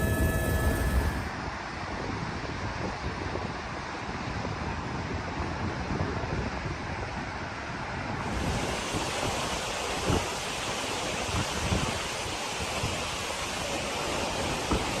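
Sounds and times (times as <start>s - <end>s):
wind buffeting microphone: 0.0s - 15.0s
river rushing: 8.2s - 15.0s.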